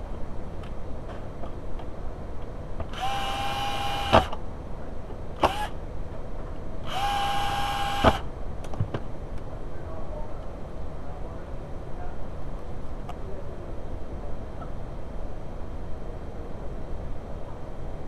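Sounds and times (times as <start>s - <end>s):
cordless drill motor whine: 2.9s - 4.3s, 5.4s - 5.8s, 6.9s - 8.3s.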